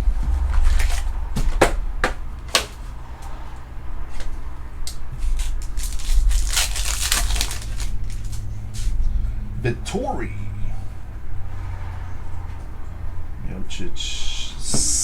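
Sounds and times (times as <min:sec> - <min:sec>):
crackling: 0:00.0 - 0:09.4
wrapper crinkling: 0:05.4 - 0:08.5.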